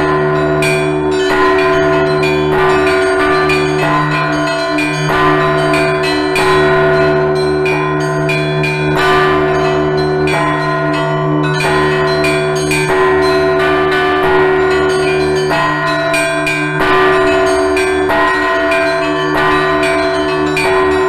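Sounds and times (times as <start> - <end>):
deep bells humming: 0.0 - 21.0
small bells ringing rhythmically: 0.0 - 21.0.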